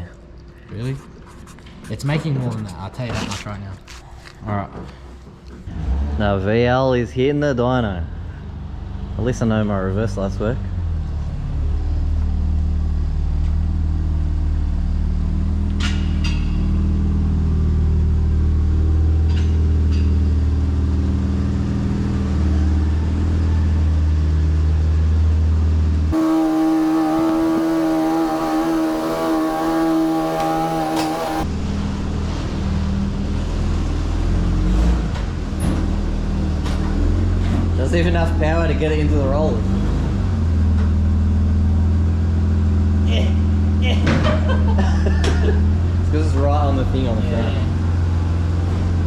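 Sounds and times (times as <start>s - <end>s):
higher wavering hum: 26.1s - 31.5s
car engine running: 26.1s - 31.6s.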